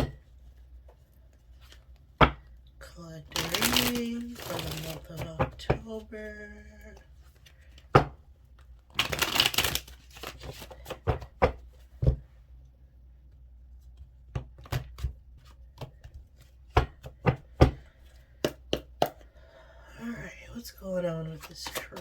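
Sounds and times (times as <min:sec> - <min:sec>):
cards being shuffled: 0:03.3 - 0:05.6, 0:08.6 - 0:11.9, 0:21.2 - 0:22.0
cards tapping and snapping: 0:03.4 - 0:05.7, 0:08.9 - 0:12.2, 0:14.3 - 0:19.3, 0:21.4 - 0:22.0.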